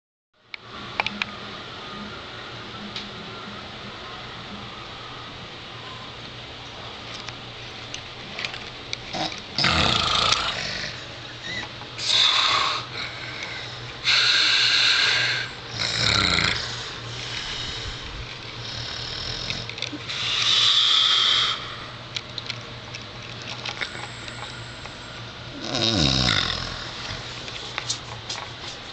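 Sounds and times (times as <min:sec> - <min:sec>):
man snoring heavily: 0:09.2 - 0:11.0, 0:14.0 - 0:17.7, 0:18.6 - 0:19.6, 0:20.3 - 0:21.6, 0:25.5 - 0:27.0.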